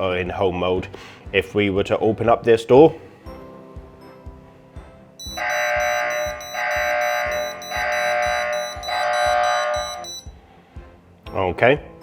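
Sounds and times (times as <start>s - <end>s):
background music with steady beat: 3.7s - 11.2s
intruder alarm long beeps: 5.2s - 10.3s.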